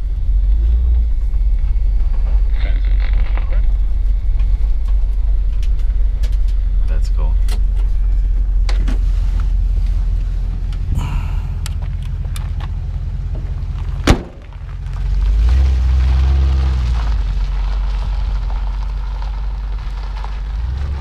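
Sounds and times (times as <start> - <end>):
car engine idling: 0.0 - 21.0
sharp thump: 14.0 - 14.5.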